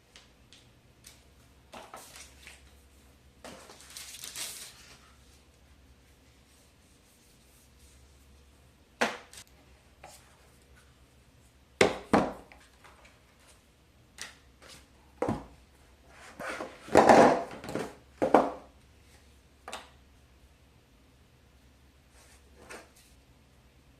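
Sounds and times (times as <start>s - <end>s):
packaging rustle: 3.5s - 5.0s.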